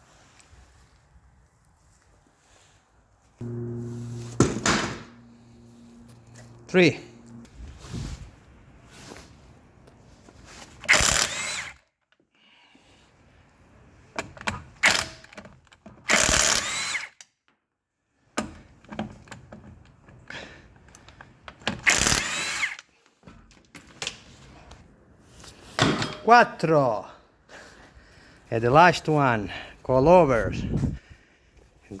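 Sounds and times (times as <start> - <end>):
power drill bursts: 3.4 - 7.5, 10.9 - 11.8, 16.1 - 17.1, 21.8 - 22.8.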